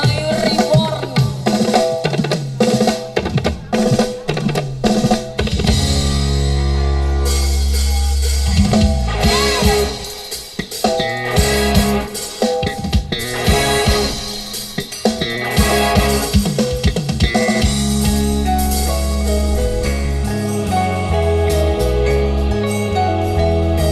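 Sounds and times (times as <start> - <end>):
drum-kit beat: 0.0 - 22.6
long deep bass note: 17.7 - 23.9.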